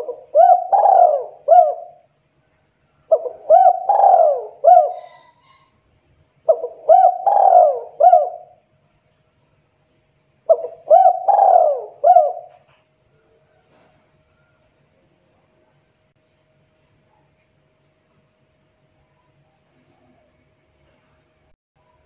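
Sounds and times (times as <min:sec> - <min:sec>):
dove cooing: 0:00.0 - 0:02.1, 0:03.1 - 0:05.7, 0:06.4 - 0:08.6, 0:10.5 - 0:12.7.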